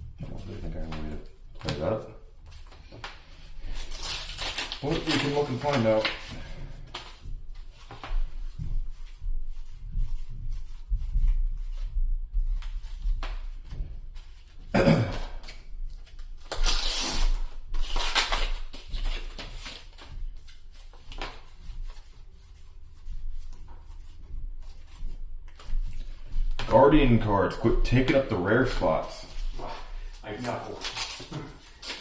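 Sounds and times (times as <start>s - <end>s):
foil wrapper crinkling: 3.6s - 7.2s, 16.1s - 20.7s.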